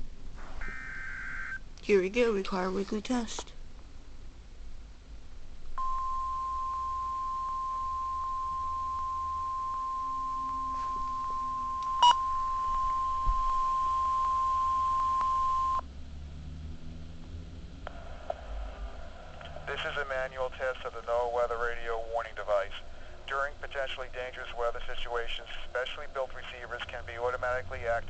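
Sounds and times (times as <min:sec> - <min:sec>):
weather radio alarm tone: 0:00.6 - 0:01.6, 0:05.8 - 0:15.8.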